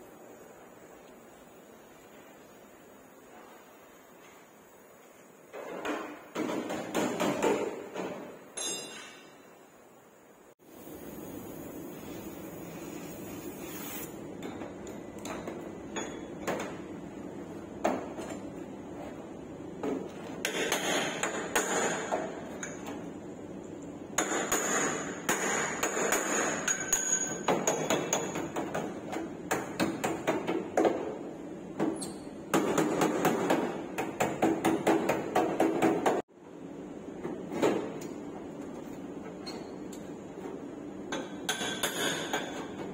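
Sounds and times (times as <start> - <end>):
hammer blows on car body metal: 24.2 - 28.8.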